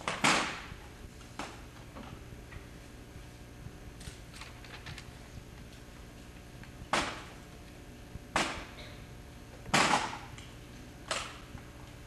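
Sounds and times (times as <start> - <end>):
sharp rifle cracks: 0.0 - 0.8, 9.7 - 10.3.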